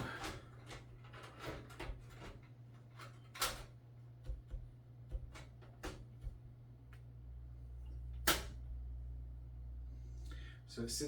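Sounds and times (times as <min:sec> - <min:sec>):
steady low hum: 0:03.7 - 0:11.0.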